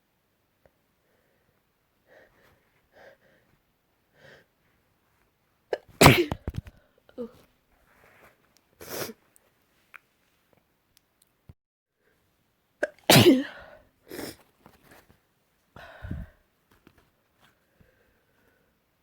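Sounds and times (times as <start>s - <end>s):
faint catching breaths: 1.0s - 4.8s, 15.8s - 16.4s, 17.5s - 18.8s
person sneezing: 5.8s - 7.4s, 12.8s - 14.4s.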